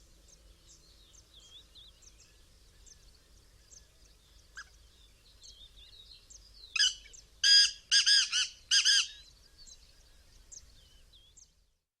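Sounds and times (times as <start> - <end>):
small birds chirping faintly: 0.0 - 12.0
francolin call: 6.8 - 9.3.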